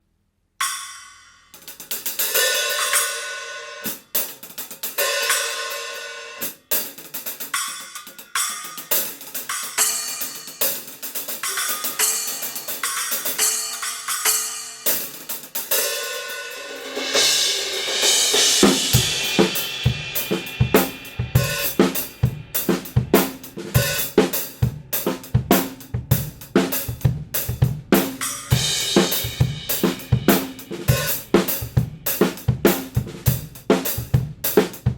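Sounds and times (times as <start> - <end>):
cymbal crashes and hi-hat strikes: 0.6 - 34.9
kick and snare drum beat: 17.0 - 34.9.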